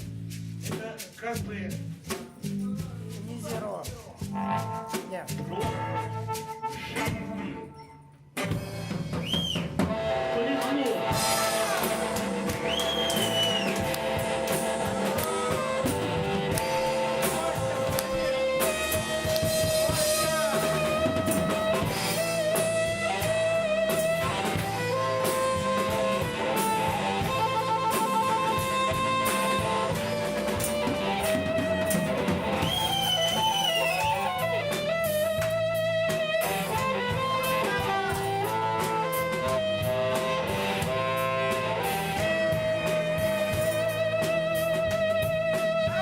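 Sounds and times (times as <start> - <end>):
live rock band playing: 0.0 - 46.0
lead guitar bent notes: 4.2 - 7.8, 8.4 - 46.0.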